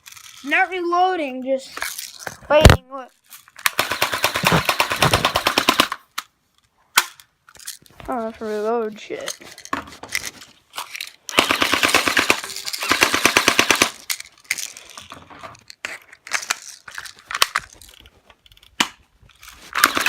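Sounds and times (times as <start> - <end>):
airsoft rifle full auto burst: 3.7 - 6.0, 11.3 - 14.0, 19.8 - 20.0.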